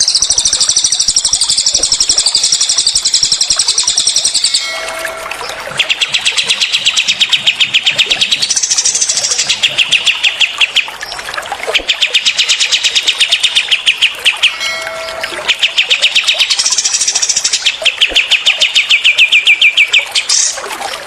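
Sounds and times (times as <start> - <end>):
songbird trilling: 0.0 - 11.2
trickling water hiss: 0.0 - 21.0.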